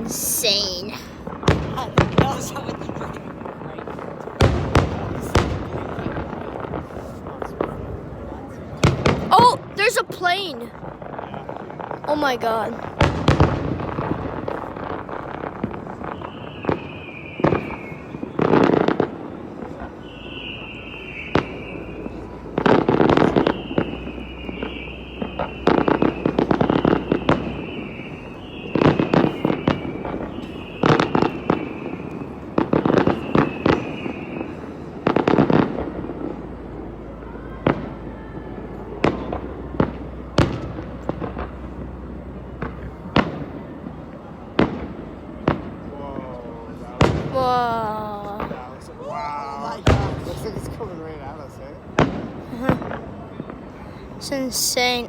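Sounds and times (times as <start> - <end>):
fireworks bursting with booms: 0.0 - 49.0, 49.6 - 54.8
high falling firework whistle: 15.9 - 35.8.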